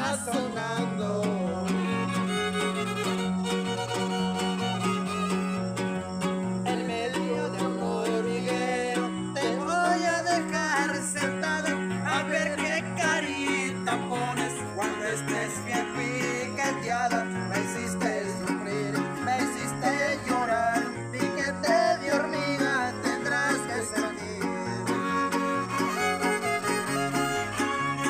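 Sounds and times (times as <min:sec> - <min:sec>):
rapidly strummed guitars: 0:00.0 - 0:28.0
violin melody: 0:00.0 - 0:28.0.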